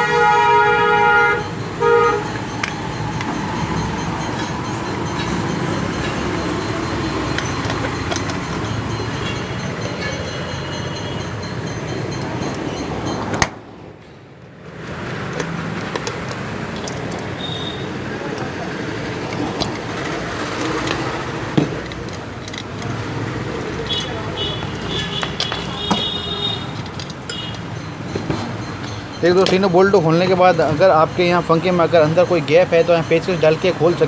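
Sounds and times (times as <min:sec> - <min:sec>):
vehicle horn honking: 0:00.0 - 0:02.4, 0:17.4 - 0:18.0, 0:23.9 - 0:27.6
street noise: 0:00.0 - 0:34.0.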